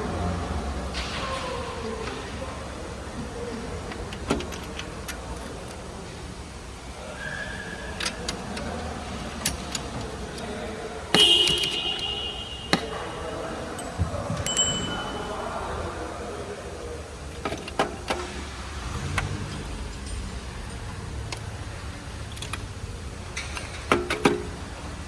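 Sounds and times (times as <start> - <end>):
hand tools clinking on metal: 13.6 - 16.4
ringing metal clank: 13.8 - 16.1.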